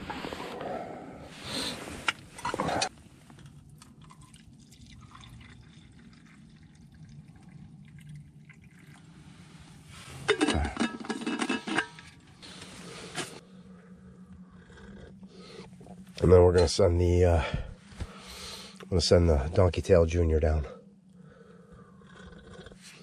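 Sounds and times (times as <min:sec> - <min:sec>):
liquid dripping: 0:03.3 - 0:09.2
liquid pouring: 0:03.3 - 0:09.5
clattering: 0:10.2 - 0:12.2.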